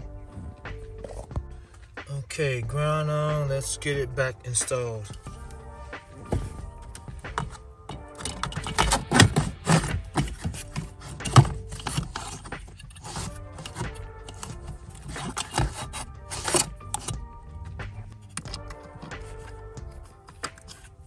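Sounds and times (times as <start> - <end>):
background music: 0.0 - 21.0
tools and parts clicking and knocking: 5.1 - 5.6, 6.3 - 21.0.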